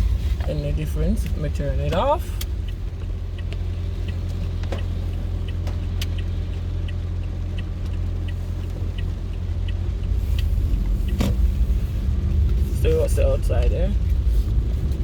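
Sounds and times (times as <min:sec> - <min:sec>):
car rumble inside cabin: 0:00.0 - 0:15.0
light ticking: 0:00.0 - 0:15.0.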